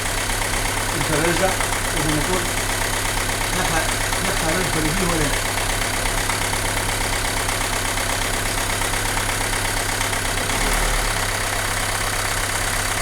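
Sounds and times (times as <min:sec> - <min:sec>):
car engine idling roughly: 0:00.0 - 0:13.0.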